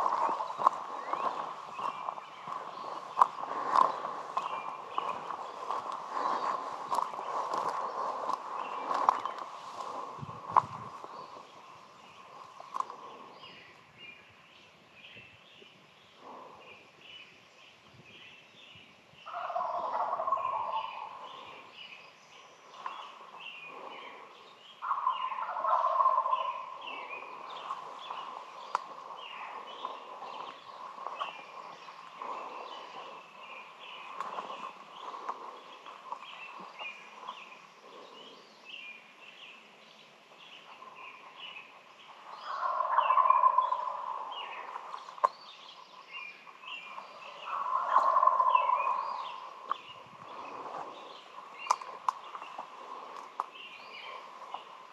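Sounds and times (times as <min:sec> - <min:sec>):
turkeys gobbling: 0:00.0 - 0:09.9, 0:19.3 - 0:21.4, 0:24.8 - 0:36.2, 0:42.4 - 0:44.7, 0:47.4 - 0:49.5
songbirds chirping: 0:00.0 - 0:54.9.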